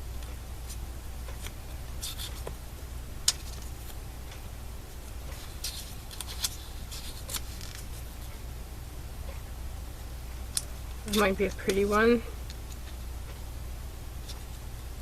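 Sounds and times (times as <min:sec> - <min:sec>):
steady low hum: 0:00.0 - 0:15.0
paper pages rustling: 0:05.0 - 0:08.2.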